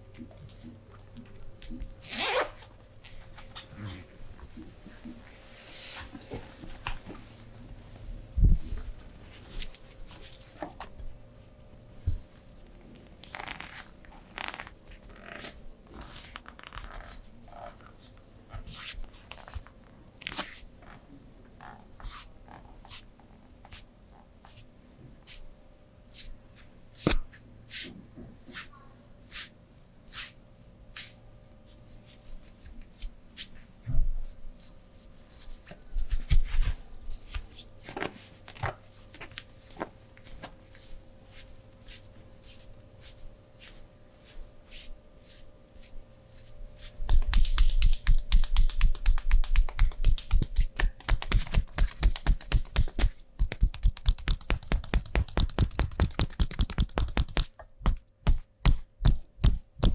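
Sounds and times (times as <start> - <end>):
rhythmic hand slaps: 47.0 - 59.9.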